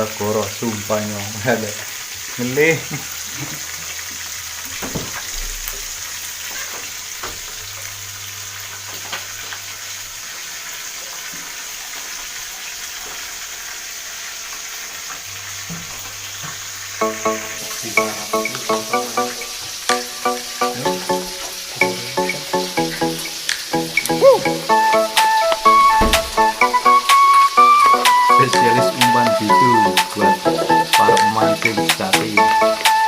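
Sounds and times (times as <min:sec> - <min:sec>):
fish sizzling in hot oil: 0:00.0 - 0:33.0
music: 0:16.9 - 0:33.0.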